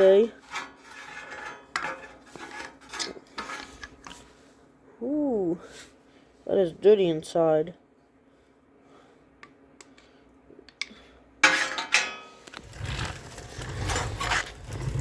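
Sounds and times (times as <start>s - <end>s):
metal parts scraping and clattering: 0.1s - 4.1s, 11.4s - 15.0s
rumbling handling noise: 12.5s - 15.0s.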